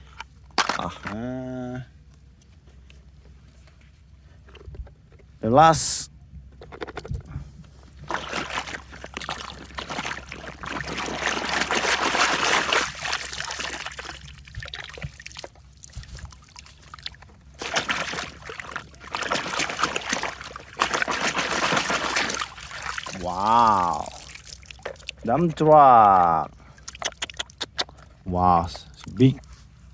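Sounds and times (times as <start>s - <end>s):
water pouring and sloshing: 6.8s - 28.3s.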